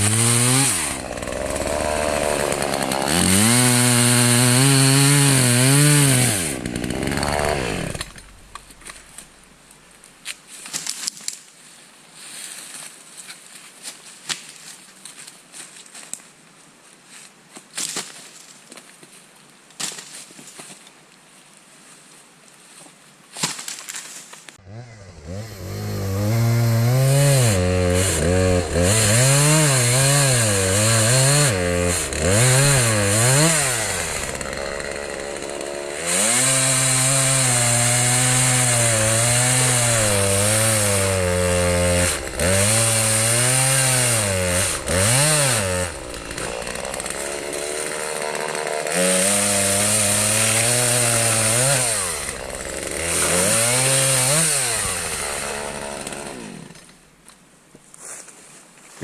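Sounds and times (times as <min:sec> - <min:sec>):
chainsaw revving: 0:00.0 - 0:08.8, 0:24.6 - 0:56.9.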